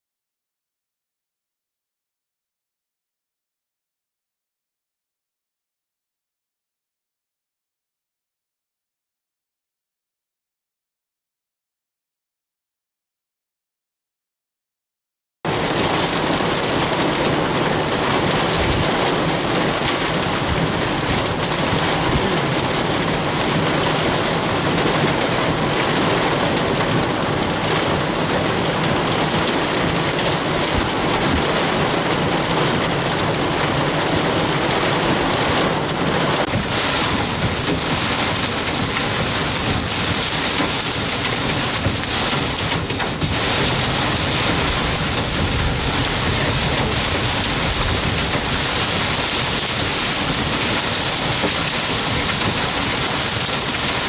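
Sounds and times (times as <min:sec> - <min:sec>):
heavy rain pouring: 0:15.5 - 0:54.0.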